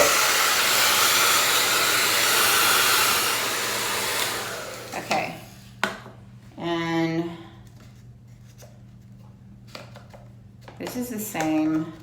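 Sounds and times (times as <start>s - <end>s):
fan winding down: 0.0s - 5.2s
hair dryer blowing: 0.0s - 5.5s.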